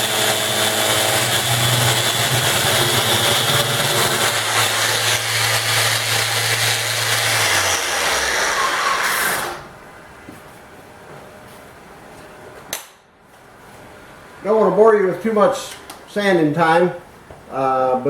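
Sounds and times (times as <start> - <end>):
sander on wood: 0.0 - 9.7.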